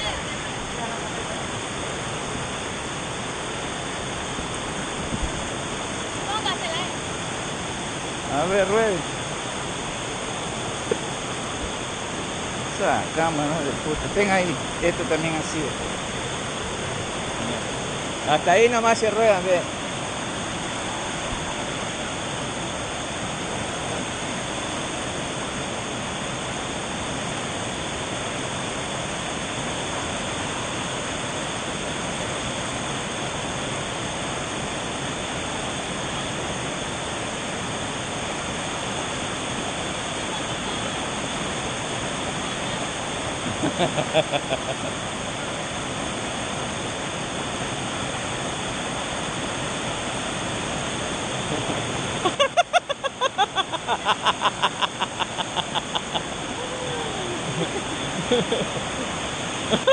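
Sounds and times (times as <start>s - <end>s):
waterfall rushing: 0.0s - 59.9s
person's voice: 56.6s - 58.8s.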